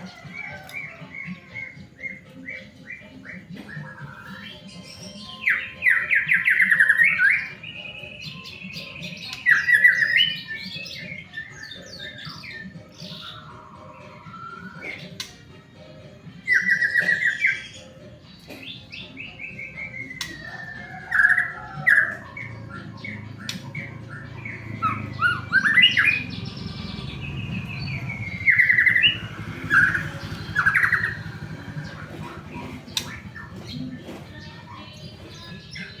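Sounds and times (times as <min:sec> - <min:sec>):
bird singing whistled phrases: 0:00.0 - 0:15.5, 0:16.5 - 0:17.9.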